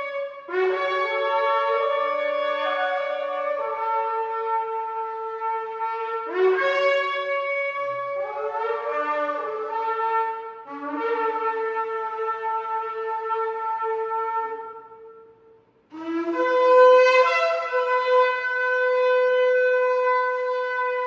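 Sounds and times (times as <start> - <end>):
shofar blasts: 0.0 - 21.0.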